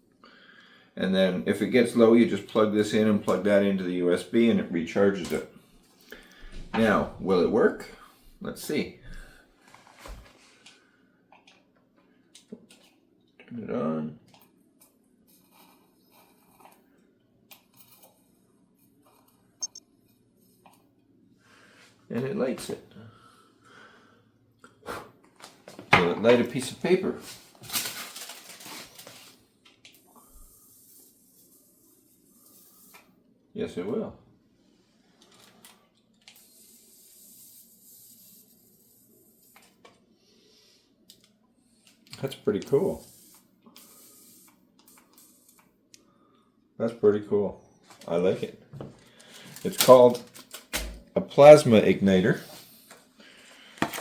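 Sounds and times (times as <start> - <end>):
handling rustles and clicks: 27.2 - 30.0, 48.9 - 51.0
electric arc hissing: 36.3 - 39.7, 42.6 - 45.6.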